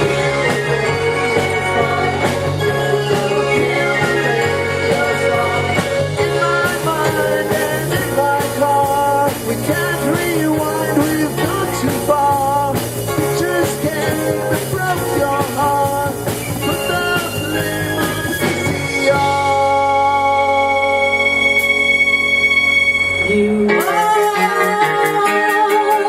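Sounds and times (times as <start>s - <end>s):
drum beat: 0.0s - 19.4s
person singing: 0.0s - 22.1s, 23.1s - 26.0s
live rock band playing: 0.0s - 26.0s.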